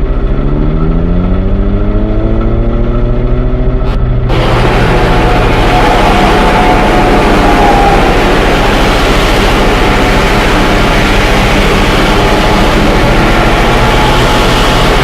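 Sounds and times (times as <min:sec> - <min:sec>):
train rumbling: 0:03.8 - 0:15.0.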